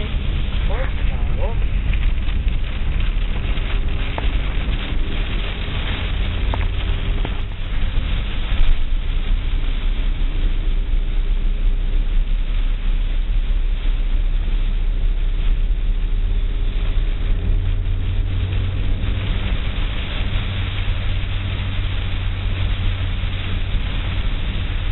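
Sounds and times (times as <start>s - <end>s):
car engine and road rumble: 0.0s - 24.9s.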